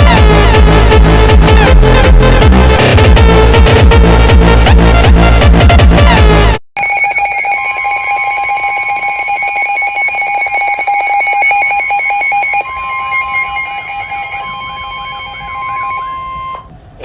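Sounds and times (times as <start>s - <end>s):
higher electronic tone: 6.2s - 16.7s
electronic alarm tone: 6.8s - 16.7s.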